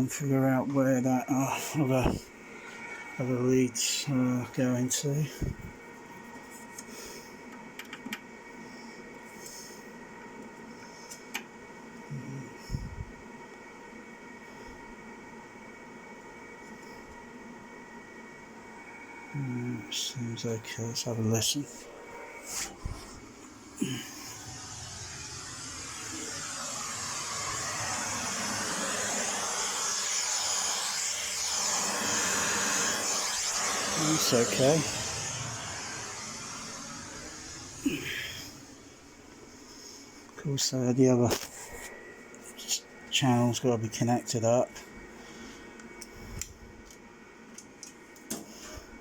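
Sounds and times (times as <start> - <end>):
thin high-pitched whines: 19.3 - 40.0
faint steady hiss: 19.3 - 46.5.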